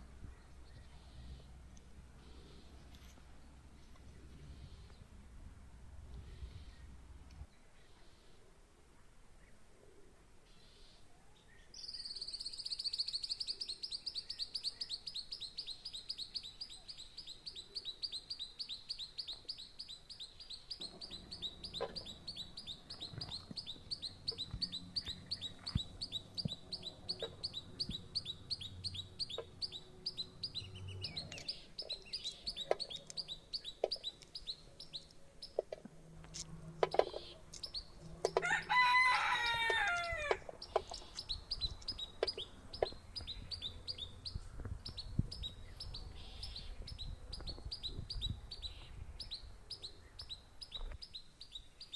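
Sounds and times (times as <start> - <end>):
chicken trilling: 37.8 - 41.2
rooster crowing: 38.3 - 40.5.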